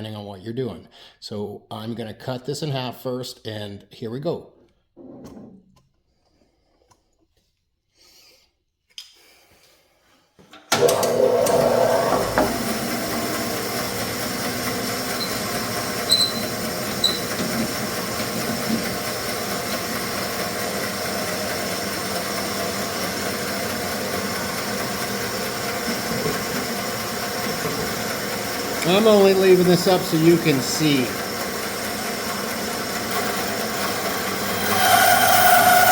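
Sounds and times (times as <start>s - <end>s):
bandsaw running: 10.7s - 35.9s.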